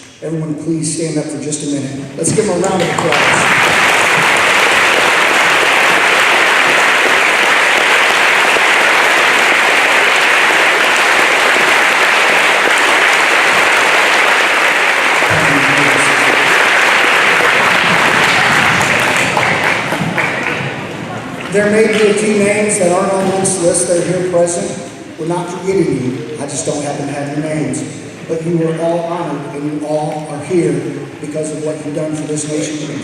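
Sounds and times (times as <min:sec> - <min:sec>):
crowd applauding: 0:02.6 - 0:22.9.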